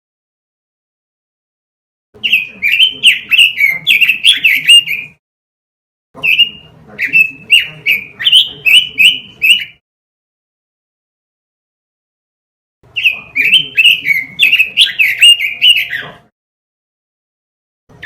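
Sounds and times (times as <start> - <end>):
bird singing whistled notes: 2.2 - 5.2, 6.2 - 9.8, 13.0 - 16.2.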